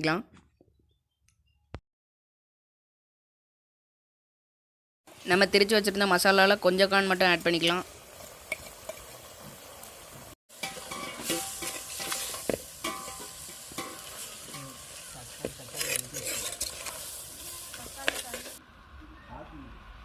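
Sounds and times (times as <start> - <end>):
chicken sizzling in oil: 5.1 - 18.6
spoon scraping and knocking pot: 10.6 - 17.0.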